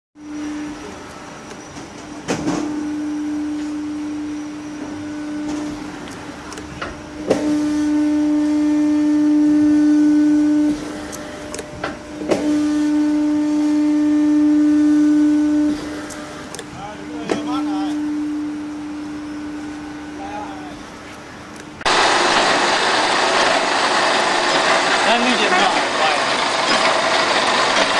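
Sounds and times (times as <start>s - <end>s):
shearing machine humming: 2.2s - 27.9s
sharp knock of shearing machine: 2.3s - 2.8s, 6.8s - 7.8s, 10.7s - 12.9s, 17.2s - 18.0s, 21.8s - 27.9s.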